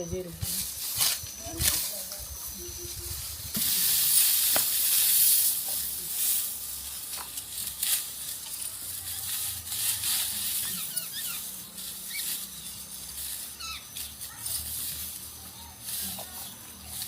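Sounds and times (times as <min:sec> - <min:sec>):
birds chirping: 0:00.0 - 0:03.9, 0:10.5 - 0:17.0
dry wheat stalks rustling: 0:00.0 - 0:17.0
sharp snaps of stalks: 0:03.6 - 0:05.7.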